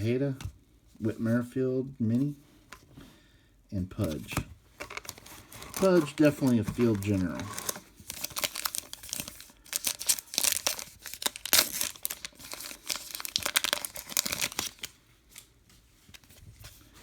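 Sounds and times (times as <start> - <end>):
foil wrapper crinkling and tearing: 4.8 - 15.5.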